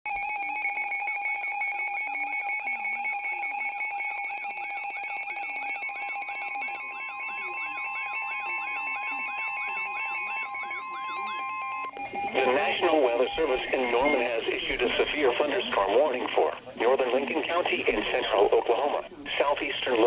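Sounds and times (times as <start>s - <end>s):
steady alarm tone: 0.1s - 20.0s
warbling siren: 0.4s - 14.4s
weather alert radio alarms: 4.3s - 20.0s.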